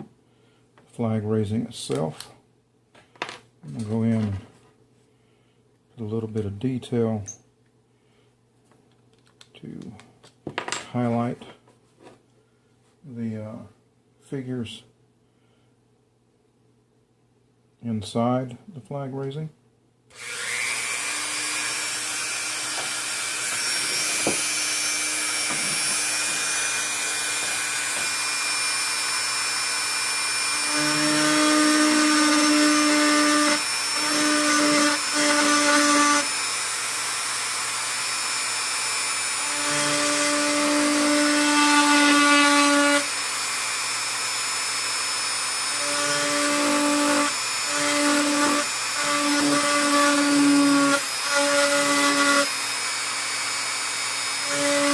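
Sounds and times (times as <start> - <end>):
rotary tool whining: 20.1 - 54.9.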